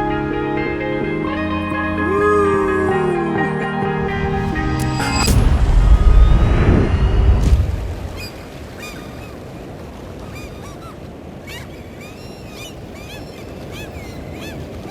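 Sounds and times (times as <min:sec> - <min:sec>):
rushing background ambience: 0:00.0 - 0:08.5
deep boom: 0:03.9 - 0:08.3.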